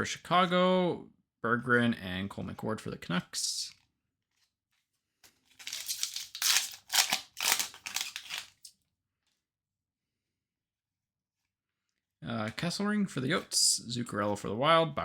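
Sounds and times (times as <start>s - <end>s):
foil wrapper crinkling and tearing: 5.4s - 8.7s.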